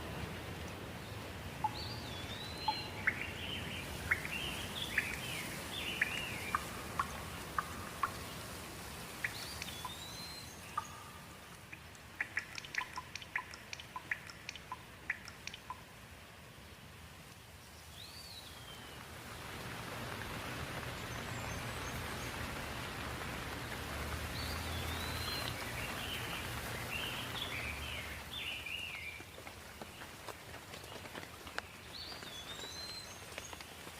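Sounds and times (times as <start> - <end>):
rain falling: 0.0 - 33.9
sharp water drips: 0.0 - 33.9
birds chirping: 1.1 - 15.9, 20.8 - 30.2.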